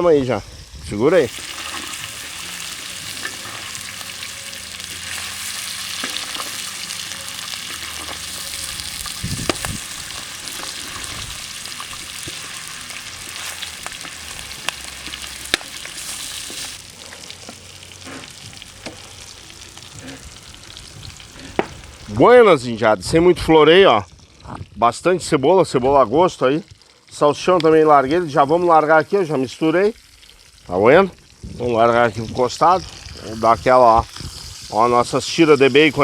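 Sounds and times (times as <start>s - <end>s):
bacon and sausages sizzling: 0.0s - 36.0s
fat popping: 8.8s - 12.6s, 13.8s - 16.8s.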